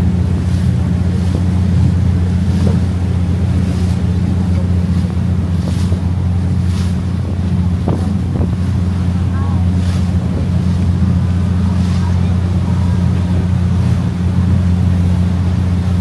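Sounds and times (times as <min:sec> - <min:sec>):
boat engines droning: 0:00.0 - 0:16.0
water hissing along hull: 0:00.0 - 0:16.0
wind on microphone: 0:00.0 - 0:16.0.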